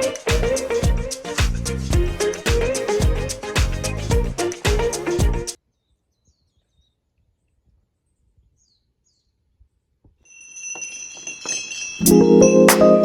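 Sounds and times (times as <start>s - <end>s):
background music with high tones: 12.0s - 13.0s.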